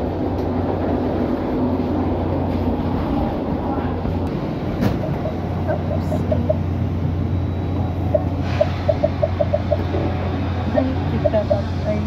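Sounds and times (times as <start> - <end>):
vehicle interior hum: 3.8 - 12.0.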